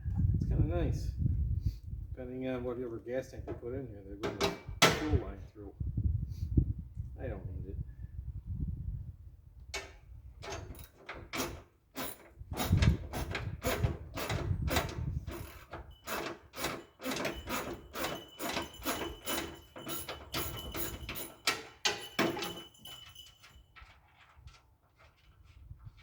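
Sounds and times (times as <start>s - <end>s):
tools clicking and knocking on metal: 4.2s - 5.2s, 9.7s - 24.0s.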